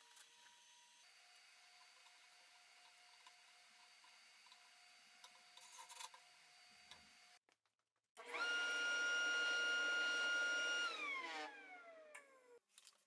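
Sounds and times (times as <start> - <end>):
dust collector motor whine: 8.2 - 12.4.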